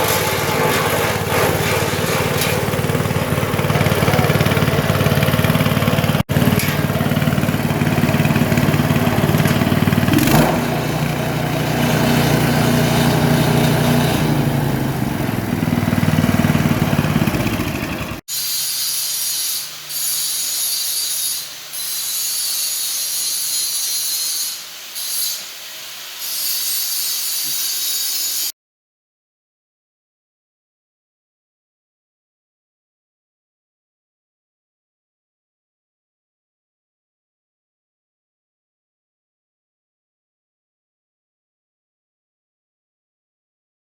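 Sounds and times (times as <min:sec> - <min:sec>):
small engine running: 0:00.0 - 0:18.2.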